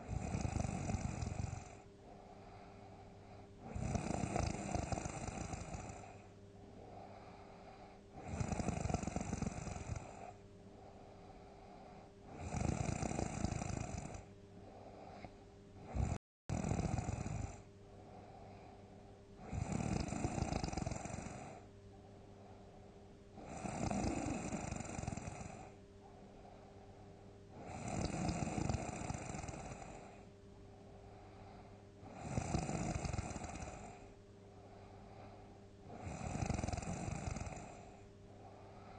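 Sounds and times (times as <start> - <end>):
person snoring loudly: 0.0 - 1.8, 3.6 - 6.2, 6.9 - 10.4, 12.3 - 14.3, 15.0 - 17.7, 19.4 - 21.6, 23.4 - 25.8, 27.6 - 30.3, 32.0 - 34.1, 35.9 - 38.0
quiet breathing: 0.0 - 38.9.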